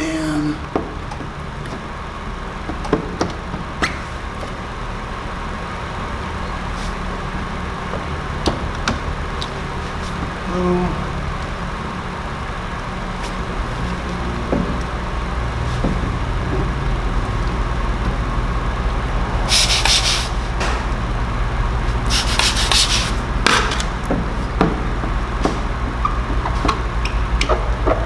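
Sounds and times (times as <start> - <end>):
steady low hum: 0.0 - 28.0
squeegee scraping on film: 19.5 - 20.8, 21.9 - 23.9.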